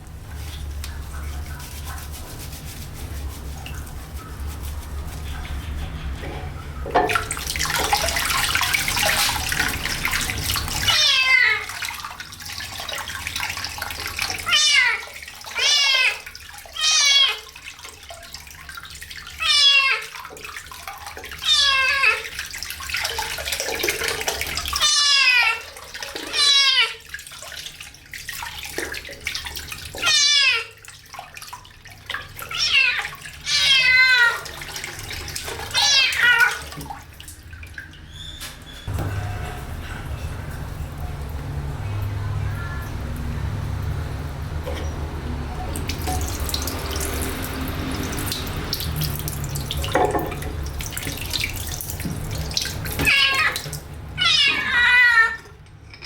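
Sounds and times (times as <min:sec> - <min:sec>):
running water: 0:00.0 - 0:56.0
kitten meowing: 0:10.9 - 0:11.7, 0:32.5 - 0:34.4, 0:42.3 - 0:42.9.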